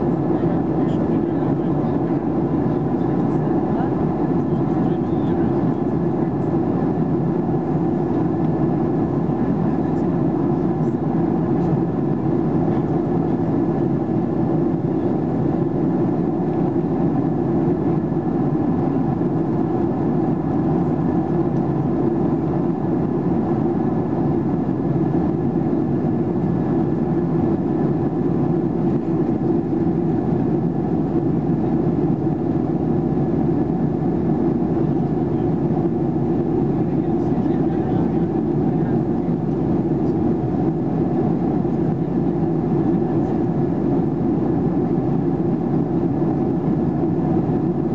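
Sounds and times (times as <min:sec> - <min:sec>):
faint steady whines: 0:00.0 - 0:47.9
jet engine drone in cabin: 0:00.0 - 0:47.9.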